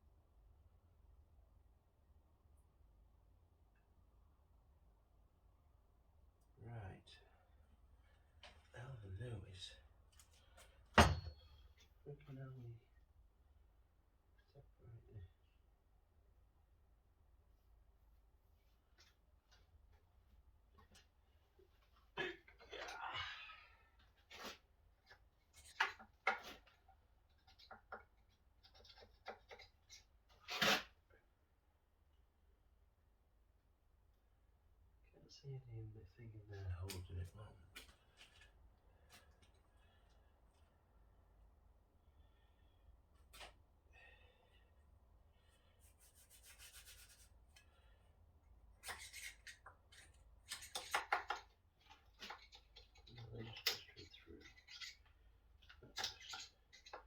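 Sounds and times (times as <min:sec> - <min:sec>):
scraping and rubbing on metal: 0:24.2 - 0:31.0, 0:45.6 - 0:47.8, 0:48.8 - 0:57.0
hand tools scraping and clicking: 0:48.8 - 0:55.0.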